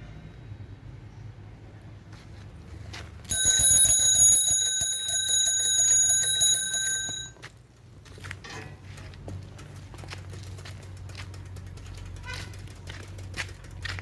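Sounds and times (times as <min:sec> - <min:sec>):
bicycle bell ringing rapidly: 0:03.3 - 0:07.4.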